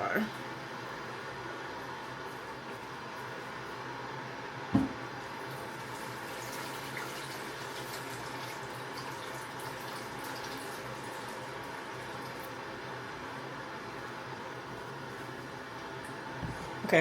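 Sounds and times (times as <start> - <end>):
tap water running into bowl: 5.6 - 12.6.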